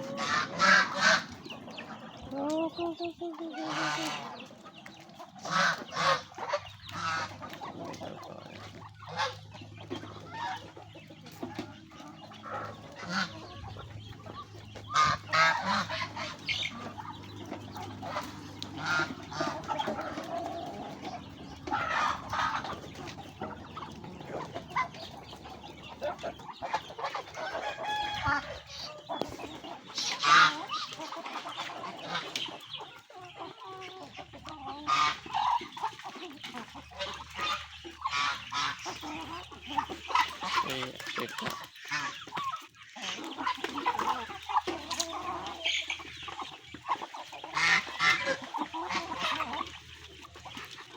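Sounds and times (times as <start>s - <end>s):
chicken squawks: 0.0s - 2.4s, 12.4s - 49.8s
chickens clucking: 0.0s - 50.9s.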